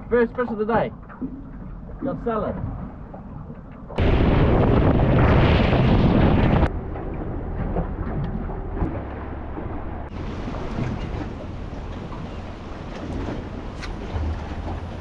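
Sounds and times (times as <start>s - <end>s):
steady wind noise: 3.9s - 9.0s
wind buffeting microphone: 3.9s - 9.0s.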